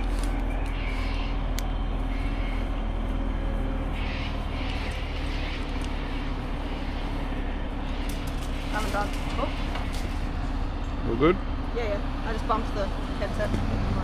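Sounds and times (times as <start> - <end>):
hissing rustles: 0.0 - 11.0
crane engine droning: 0.0 - 14.0.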